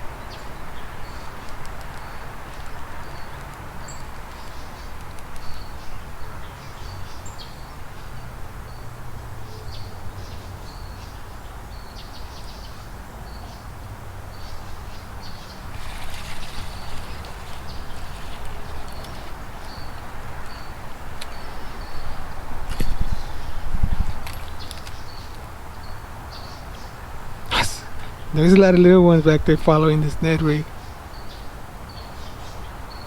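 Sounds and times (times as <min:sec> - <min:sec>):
small birds chirping: 0:00.0 - 0:08.9, 0:09.6 - 0:33.0
hissing rustle: 0:15.4 - 0:21.6.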